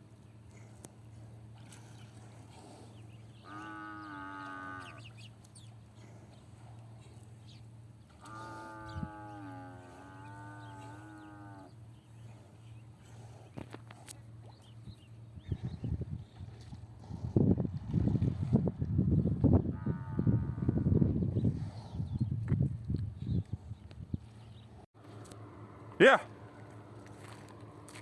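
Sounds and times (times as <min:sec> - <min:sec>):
cattle mooing: 0:03.4 - 0:05.1, 0:08.2 - 0:11.8, 0:19.7 - 0:21.0.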